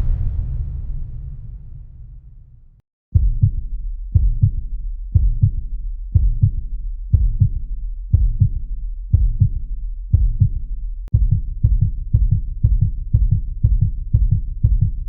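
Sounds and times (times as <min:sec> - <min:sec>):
low rumble: 0:00.0 - 0:15.0
heartbeat lub-dub: 0:03.1 - 0:15.0.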